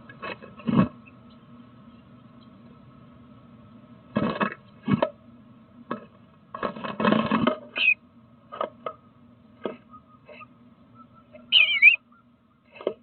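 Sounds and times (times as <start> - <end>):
faint electrical hum: 0.0 - 13.0
bird chirp: 7.7 - 8.0, 9.6 - 12.8.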